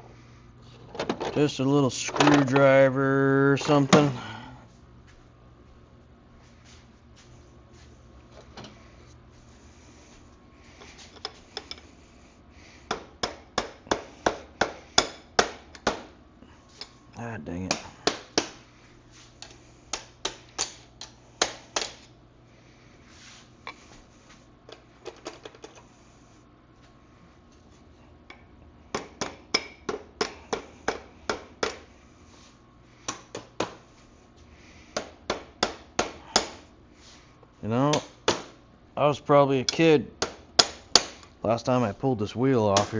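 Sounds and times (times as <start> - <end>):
hammer tapping on metal: 12.9 - 16.1, 28.3 - 31.8.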